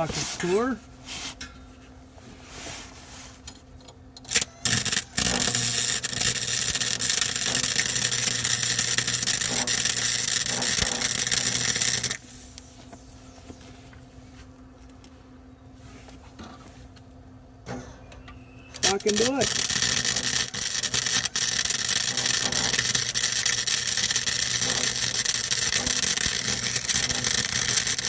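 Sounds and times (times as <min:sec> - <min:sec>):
arc welder crackling hiss: 0:04.3 - 0:12.9, 0:18.8 - 0:28.0.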